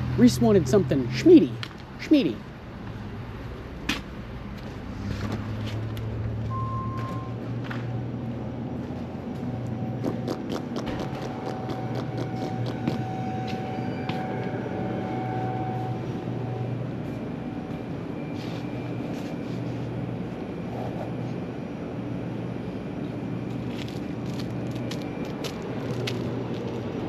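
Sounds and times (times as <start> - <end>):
engine and road rumble: 0.0 - 27.0
pulsing hum: 6.0 - 27.0.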